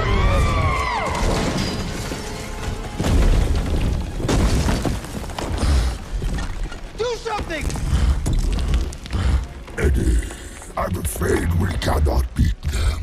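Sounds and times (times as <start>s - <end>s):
music: 0.0s - 4.5s, 7.9s - 13.0s.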